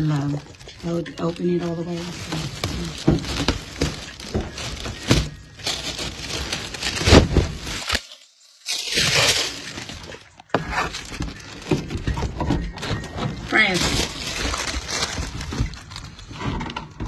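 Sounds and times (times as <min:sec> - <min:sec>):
cardboard box tearing: 0:02.0 - 0:12.0, 0:13.5 - 0:16.2.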